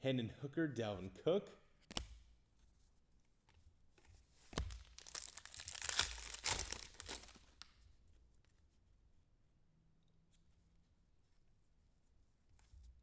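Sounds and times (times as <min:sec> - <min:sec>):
card pack wrapper snap: 0:04.6 - 0:07.7
wrapper tearing and crinkling: 0:04.6 - 0:07.7.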